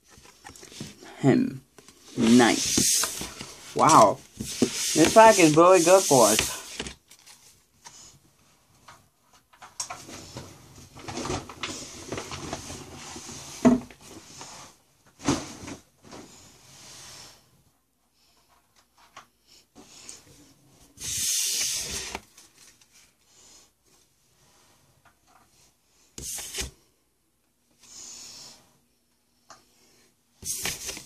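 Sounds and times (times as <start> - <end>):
cards rustling: 1.8 - 7.6, 30.4 - 31.0
trading cards rubbing and sliding: 1.9 - 6.9, 21.0 - 22.2, 30.4 - 31.0.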